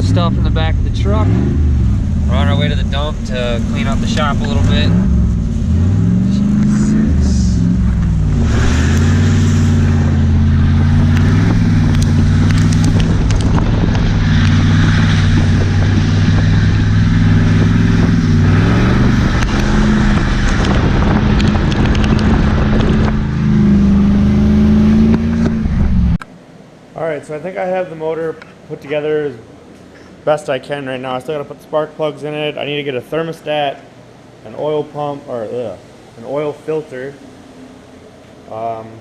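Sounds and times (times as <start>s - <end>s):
truck engine: 0.0s - 26.2s
road noise: 0.0s - 39.0s.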